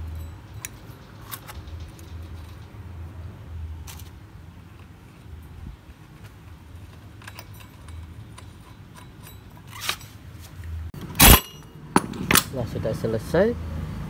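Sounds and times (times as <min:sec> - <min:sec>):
small metal parts clinking: 0:00.0 - 0:03.0, 0:03.8 - 0:10.3, 0:11.1 - 0:12.6.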